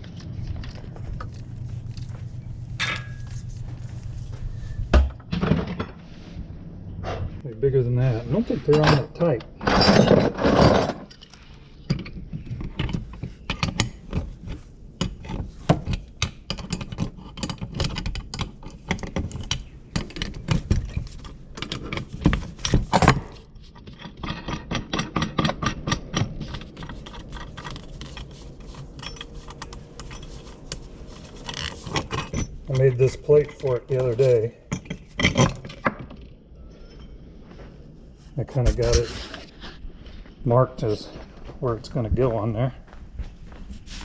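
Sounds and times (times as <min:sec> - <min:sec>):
metal clinks of tools: 0:27.1 - 0:30.8.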